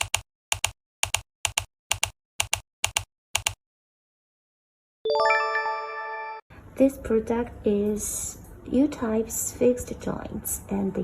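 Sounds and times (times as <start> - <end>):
keystroke double clicks: 0.0 - 3.6
bright chime: 5.1 - 6.4.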